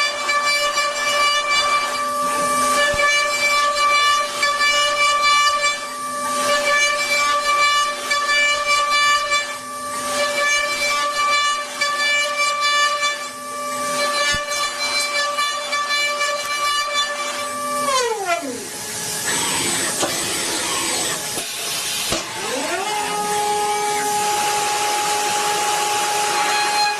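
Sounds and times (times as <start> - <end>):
machine tool whining: 0.0 - 26.9.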